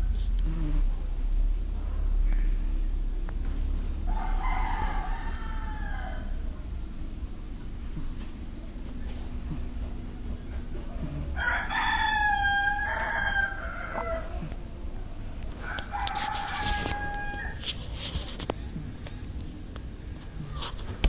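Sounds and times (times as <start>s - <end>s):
rooster crowing: 4.0s - 6.6s, 11.4s - 14.5s, 15.6s - 17.7s.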